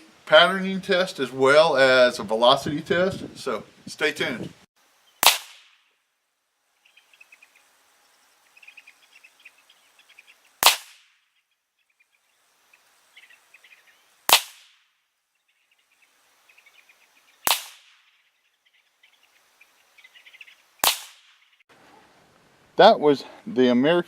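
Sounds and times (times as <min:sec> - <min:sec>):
rifle shots: 0:05.2 - 0:05.7, 0:10.6 - 0:11.1, 0:14.3 - 0:14.8, 0:17.4 - 0:18.0, 0:20.8 - 0:21.3.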